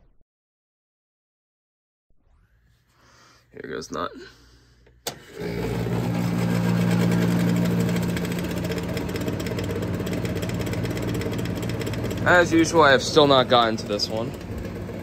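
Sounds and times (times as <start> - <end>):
air conditioner humming and rushing: 3.4 - 15.0.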